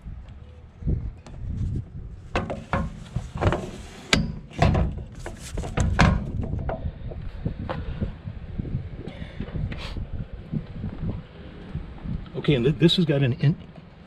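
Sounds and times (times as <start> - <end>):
tools knocking and clunking: 2.3 - 7.8.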